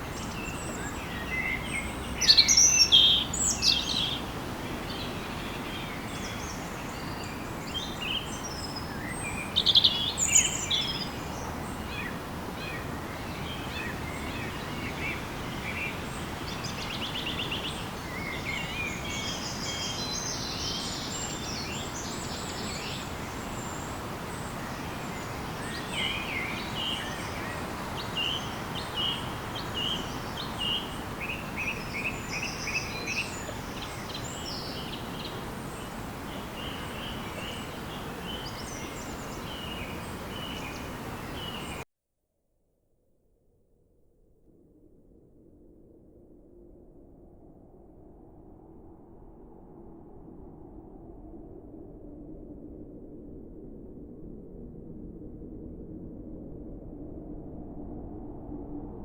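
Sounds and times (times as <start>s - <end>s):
forest birds chirping: 0.0s - 41.8s
steady background hiss: 0.0s - 41.8s.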